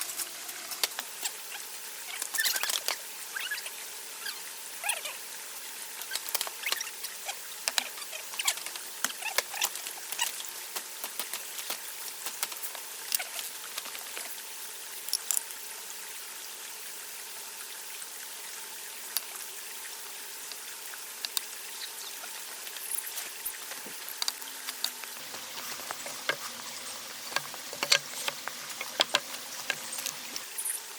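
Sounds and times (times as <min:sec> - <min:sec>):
steady hiss: 0:00.0 - 0:30.9
ticks and scratches on wood: 0:07.7 - 0:14.4, 0:22.2 - 0:30.5.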